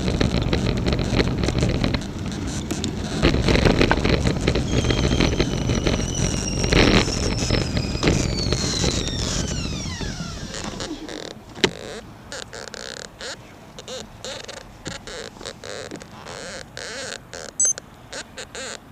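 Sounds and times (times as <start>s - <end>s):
wind on microphone: 0.0s - 11.8s
bike clicking: 0.0s - 17.8s
road rumble: 0.0s - 18.9s.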